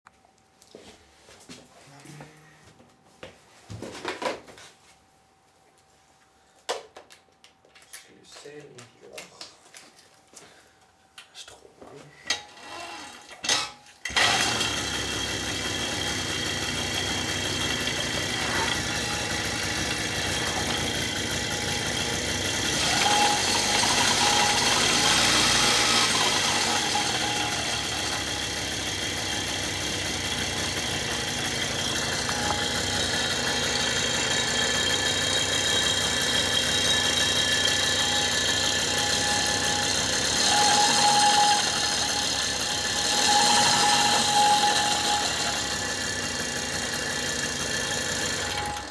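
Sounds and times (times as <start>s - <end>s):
moped engine running: 14.1s - 48.9s
thin whining tone: 15.8s - 48.9s.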